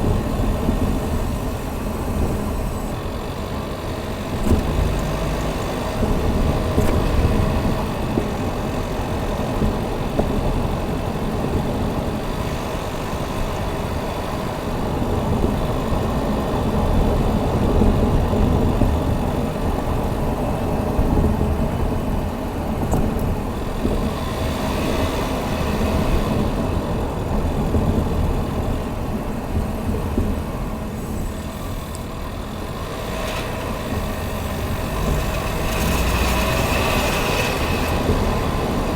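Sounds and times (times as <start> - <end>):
car engine rumbling: 0.0 - 38.9.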